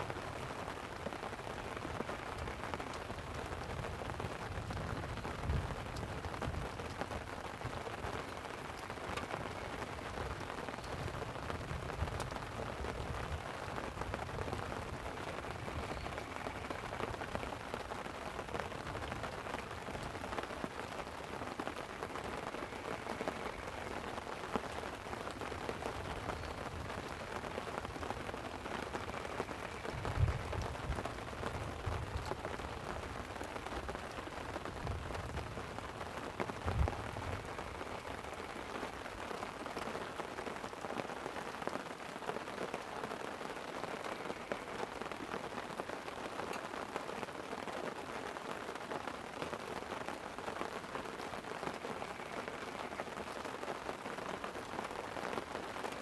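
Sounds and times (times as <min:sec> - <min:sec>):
light rain on a tent: 0:00.0 - 0:56.0
low rumbles of thunder: 0:29.4 - 0:33.2, 0:34.8 - 0:38.2.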